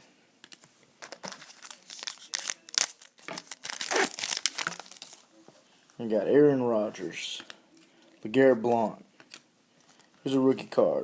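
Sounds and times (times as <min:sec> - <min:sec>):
card pack wrapper tearing and crinkling: 0:01.0 - 0:05.2.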